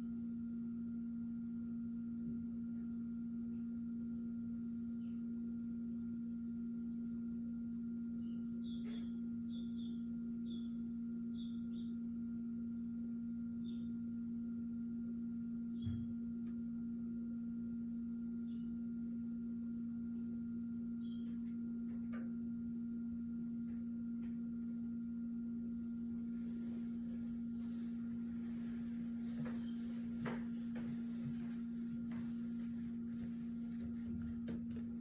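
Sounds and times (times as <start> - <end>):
low electrical hum: 0.0 - 35.0
faint chirps and ticks: 8.1 - 12.2, 20.1 - 22.4.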